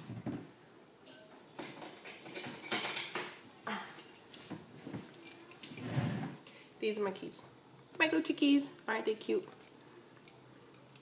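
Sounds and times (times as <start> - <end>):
key ring jingling: 5.1 - 6.5, 8.0 - 11.0.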